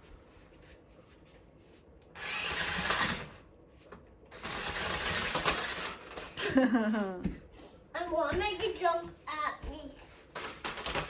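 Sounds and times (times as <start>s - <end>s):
toy truck electric motor whirring: 2.2s - 3.4s, 4.3s - 6.4s.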